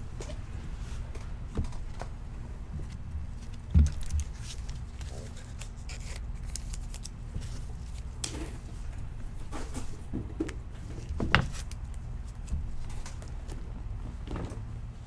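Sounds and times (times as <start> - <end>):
light taps and rustles: 0.2 - 5.7.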